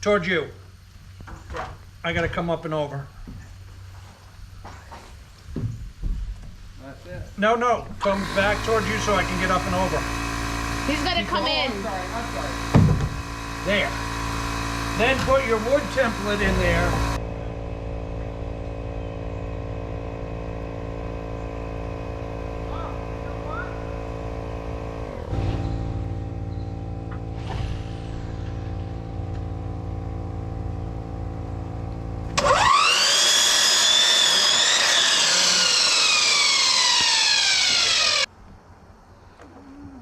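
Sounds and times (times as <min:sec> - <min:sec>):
machine hum: 0:00.0 - 0:39.0
power drill whirring: 0:08.0 - 0:17.2, 0:32.3 - 0:38.3.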